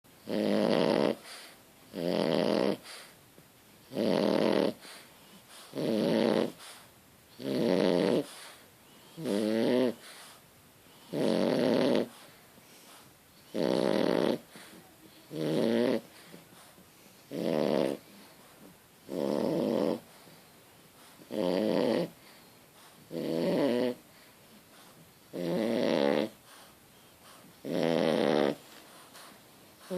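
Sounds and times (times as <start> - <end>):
quiet breaths: 0.1 - 29.9
rattling snore: 3.9 - 4.8, 5.7 - 6.6, 7.4 - 8.3, 9.2 - 10.0, 11.1 - 12.1, 13.5 - 14.5, 15.3 - 16.1, 17.3 - 18.0, 19.1 - 20.0, 21.3 - 22.1, 23.1 - 24.0, 25.3 - 26.4, 27.6 - 28.6.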